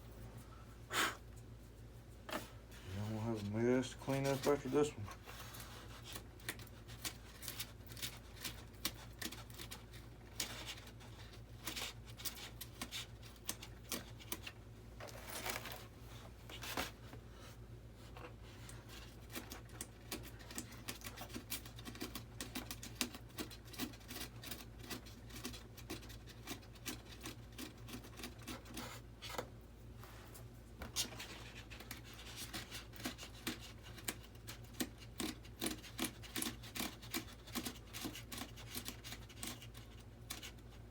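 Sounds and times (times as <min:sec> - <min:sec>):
steady low hum: 0:00.0 - 0:25.6.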